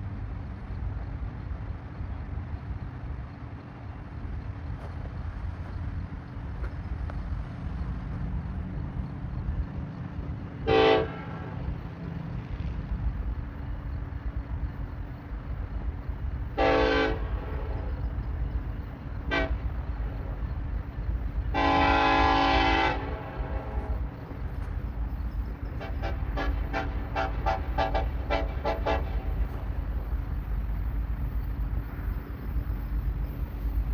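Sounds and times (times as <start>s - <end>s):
moving train rumble: 0.0s - 33.9s
locomotive air horn blasts: 10.6s - 11.7s, 16.5s - 18.0s, 19.1s - 20.2s, 21.4s - 24.6s, 25.7s - 30.1s.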